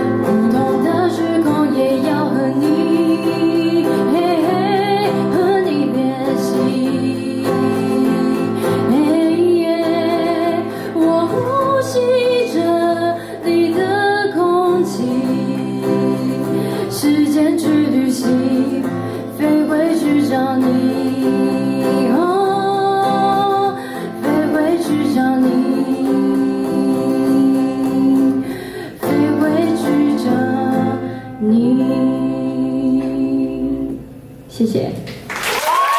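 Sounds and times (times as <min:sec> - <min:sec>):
person singing: 0:00.0 - 0:34.0
guitar accompaniment: 0:00.0 - 0:35.3.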